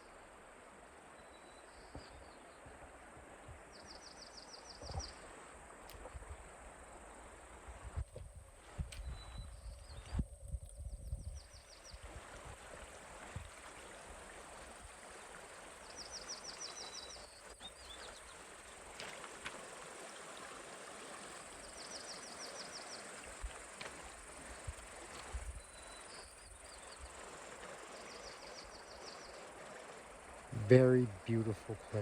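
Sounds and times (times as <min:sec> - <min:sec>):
outdoor hiss: 0:12.8 - 0:32.0.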